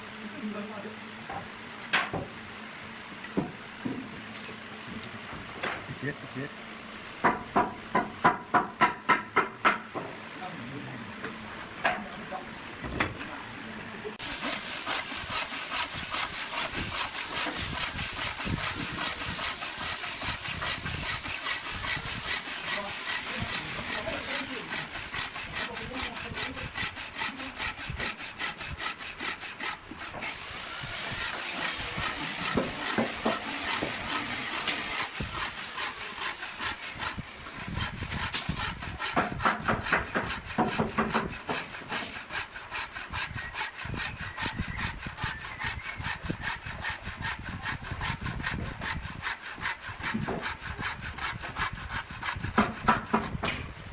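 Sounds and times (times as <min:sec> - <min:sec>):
hand saw cutting wood: 0:07.2 - 0:10.0, 0:14.2 - 0:53.9.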